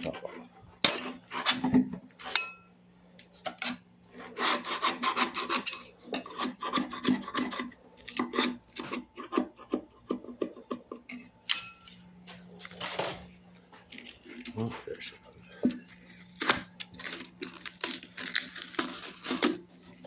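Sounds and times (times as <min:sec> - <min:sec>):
scraping strokes on wood: 0:03.5 - 0:10.5.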